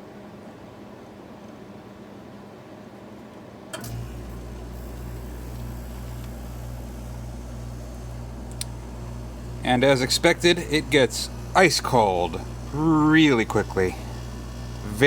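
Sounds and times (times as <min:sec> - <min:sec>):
air conditioner fan: 0:00.0 - 0:15.0
compressor humming: 0:03.8 - 0:15.0
thermostat click: 0:04.9 - 0:10.0.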